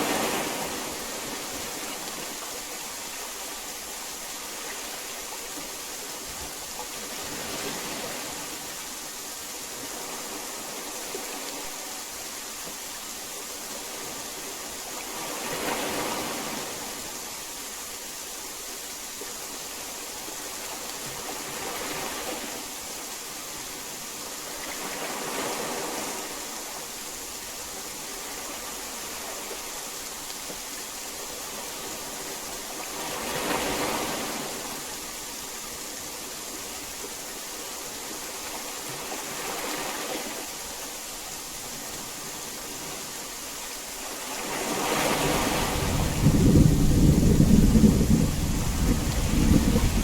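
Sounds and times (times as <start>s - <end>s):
heavy rain falling: 44.9s - 50.0s
rolling rumble of thunder: 45.6s - 50.0s.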